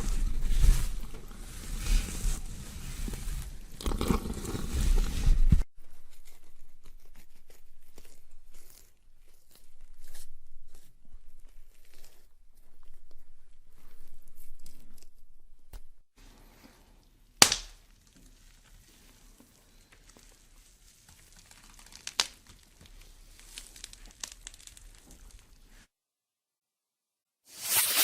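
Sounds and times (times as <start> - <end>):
crinkling crackling: 0.0 - 15.3, 16.2 - 25.9
sharp loud snap: 17.4 - 17.8.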